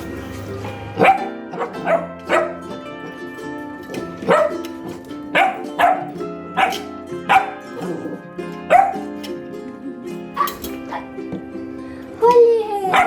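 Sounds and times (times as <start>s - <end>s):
background music: 0.0s - 13.0s
dog barking: 1.0s - 2.7s, 4.2s - 4.6s, 5.3s - 9.1s.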